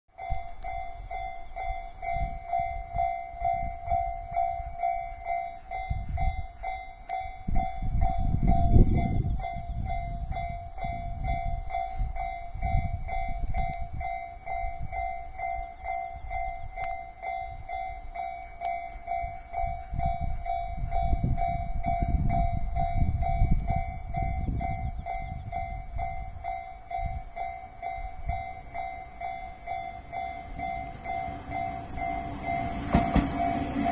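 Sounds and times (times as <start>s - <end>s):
level crossing warning bell: 0.1s - 33.9s
train wheels clattering over rails: 29.8s - 33.9s.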